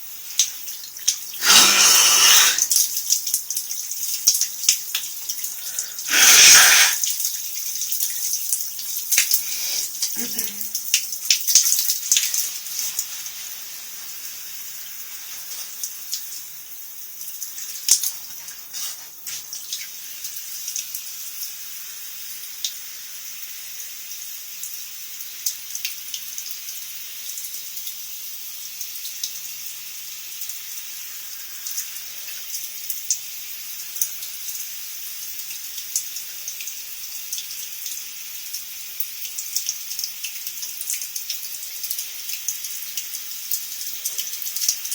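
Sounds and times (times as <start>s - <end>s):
drips and splashes: 0.1s - 21.6s, 24.6s - 44.9s
shower water spraying: 1.4s - 3.0s, 5.5s - 7.2s, 9.4s - 16.2s.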